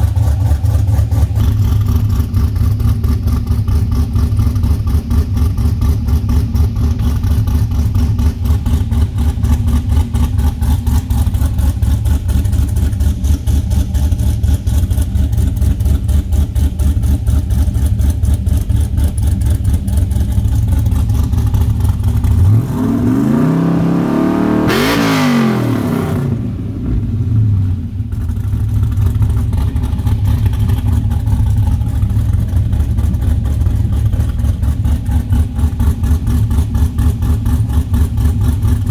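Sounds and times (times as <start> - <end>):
car engine idling and revving: 0.0 - 38.9.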